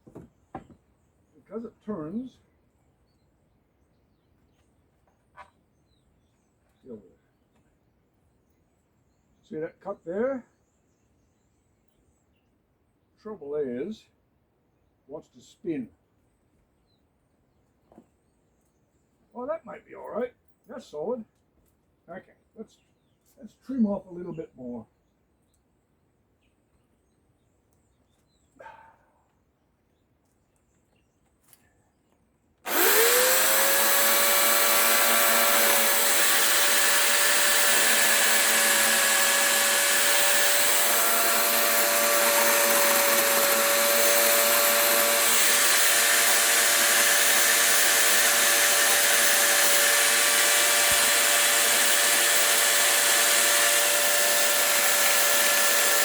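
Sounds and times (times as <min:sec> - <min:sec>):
rotary tool whining: 0:32.7 - 0:56.0.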